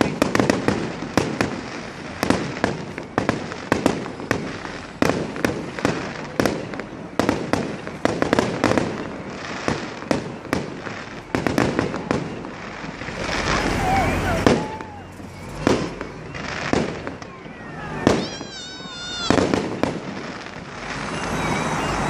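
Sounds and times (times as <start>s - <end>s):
fireworks bangs and cracks: 0.0s - 22.0s.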